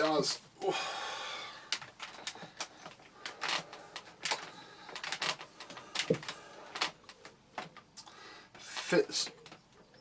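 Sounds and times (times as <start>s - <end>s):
cable clicks and knocks: 1.6s - 9.8s
cable rubbing on plastic: 1.7s - 7.7s.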